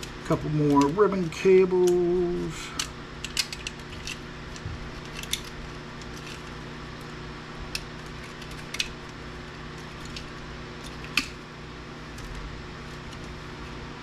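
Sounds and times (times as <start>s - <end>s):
plastic and metal parts clicking: 0.0s - 6.5s
steady low hum: 0.0s - 14.0s.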